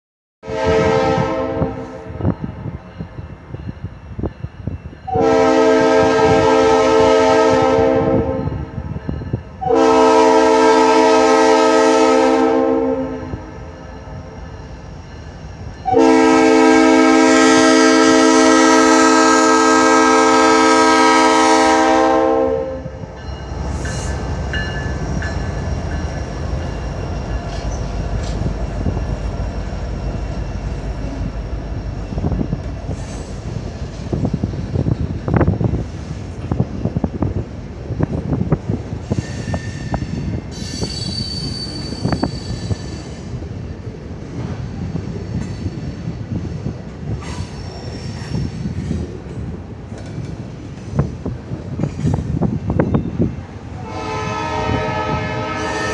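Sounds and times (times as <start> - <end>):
train air horn blasts: 0.4 - 2.3, 5.1 - 8.8, 9.6 - 13.8, 15.8 - 23.1, 53.7 - 55.9
train rumbling past: 0.4 - 55.9.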